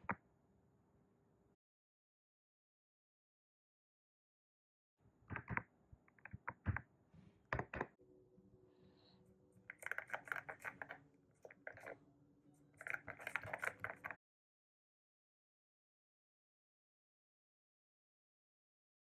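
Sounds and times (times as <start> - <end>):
mechanical keyboard typing: 9.7 - 12.0, 12.8 - 14.2.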